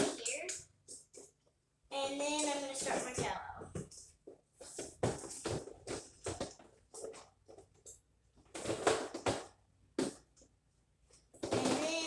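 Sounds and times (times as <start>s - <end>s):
plastic cups clattering: 11.4s - 12.0s.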